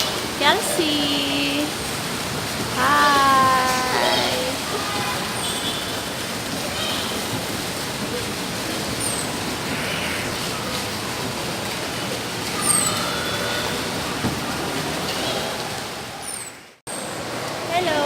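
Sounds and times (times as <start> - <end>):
faint voices: 0.3 - 5.2.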